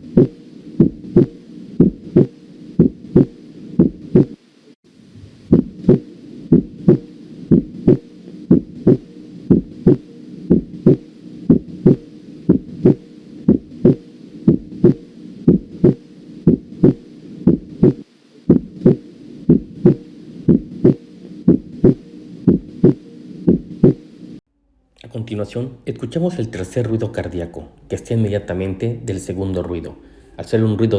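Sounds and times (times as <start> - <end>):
heartbeat through stethoscope: 0.0 - 4.4, 5.2 - 24.1.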